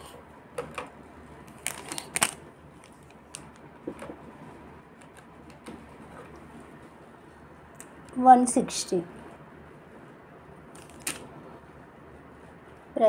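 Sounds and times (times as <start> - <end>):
crinkling: 1.5 - 4.2, 10.7 - 11.3.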